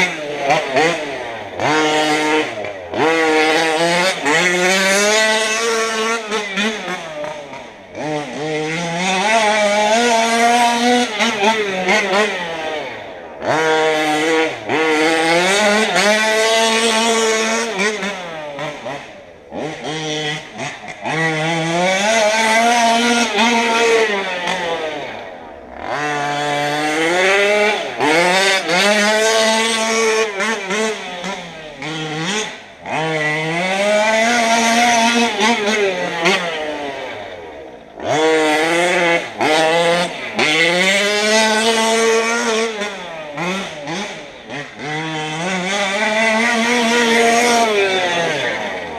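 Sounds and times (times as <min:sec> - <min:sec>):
two-stroke engine revving: 0:00.0 - 0:48.9.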